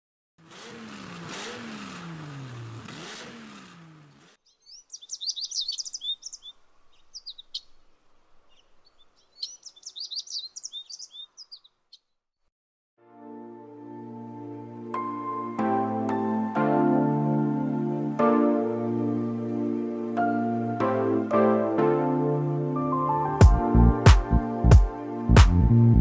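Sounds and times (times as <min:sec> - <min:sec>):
car engine running: 0:00.4 - 0:04.4
birds chirping: 0:02.0 - 0:12.2.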